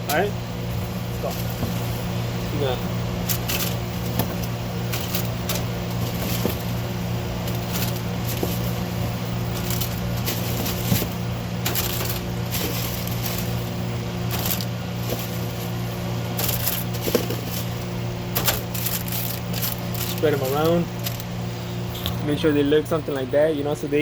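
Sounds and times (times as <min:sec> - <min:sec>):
kitchen equipment hum: 0:00.0 - 0:24.0
clicks taps and rustles: 0:03.2 - 0:21.3.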